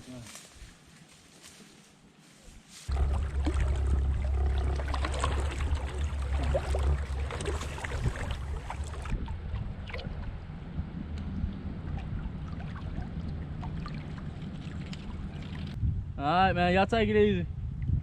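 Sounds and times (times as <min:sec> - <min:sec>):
boat motor rumbling: 0:02.9 - 0:15.8
water noise: 0:02.9 - 0:15.8
wind noise: 0:02.9 - 0:18.0.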